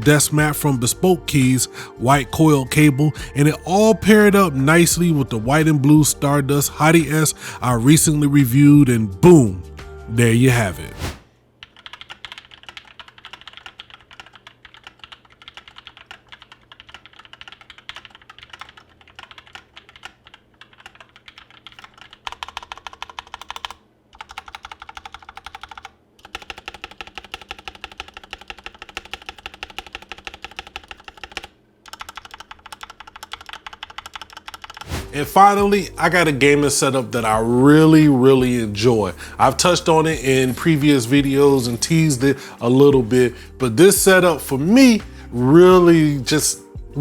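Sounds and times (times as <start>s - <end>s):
mechanical keyboard typing: 11.6s - 34.9s.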